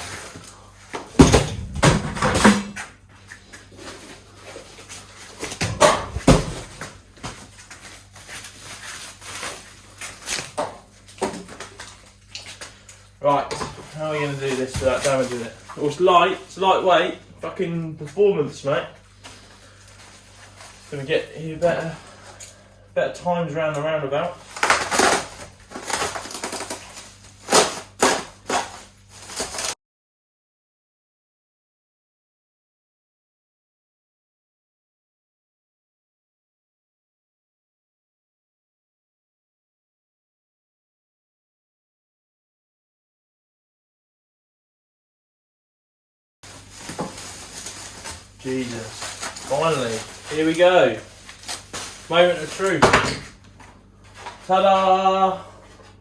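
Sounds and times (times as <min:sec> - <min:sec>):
packaging rustling and scraping: 0:00.0 - 0:16.7, 0:19.0 - 0:22.6, 0:24.3 - 0:29.8, 0:46.4 - 0:54.8
faint hum: 0:00.0 - 0:29.7
handling noise scrapes: 0:46.4 - 0:52.8.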